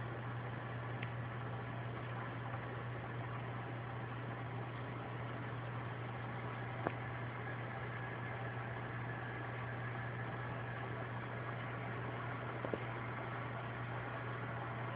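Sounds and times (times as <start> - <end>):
low hum: 0.0 - 14.9
faint clicks: 1.0 - 1.2.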